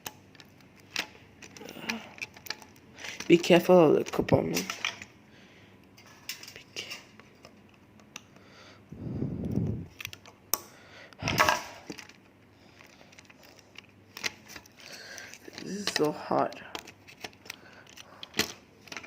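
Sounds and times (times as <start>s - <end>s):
plastic toy parts clicking together: 0.0s - 5.1s, 9.9s - 10.7s, 12.8s - 19.0s.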